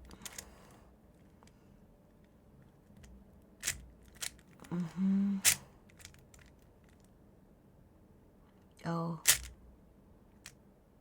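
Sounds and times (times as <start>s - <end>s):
plastic puzzle cube clicks: 9.2s - 9.6s.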